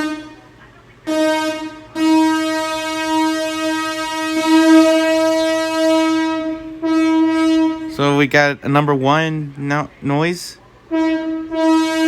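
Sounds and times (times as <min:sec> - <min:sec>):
synthesized train horn: 0:00.0 - 0:12.0.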